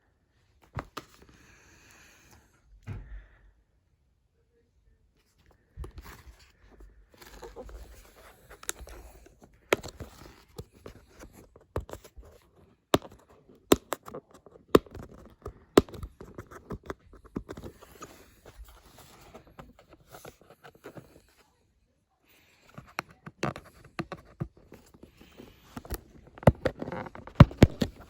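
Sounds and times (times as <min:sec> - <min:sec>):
packaging scratching and scraping: 0:06.0 - 0:12.5, 0:22.7 - 0:28.0.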